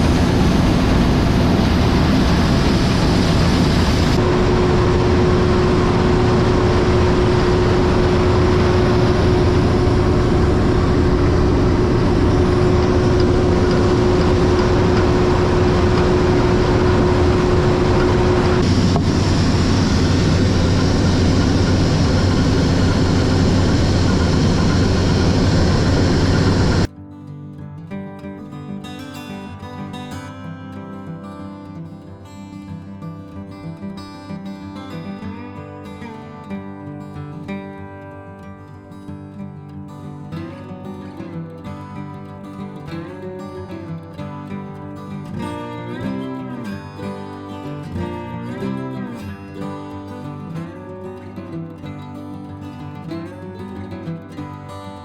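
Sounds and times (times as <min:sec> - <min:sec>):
heavy farm machinery running: 0:00.0 - 0:26.9
steady machine whine: 0:00.0 - 0:26.9.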